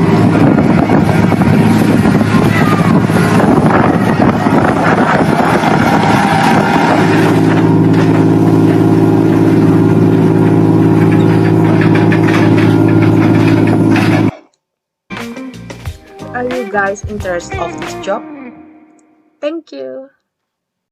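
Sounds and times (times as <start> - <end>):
boat engine humming: 0.0 - 14.3, 15.7 - 19.0
wind noise: 0.0 - 14.3.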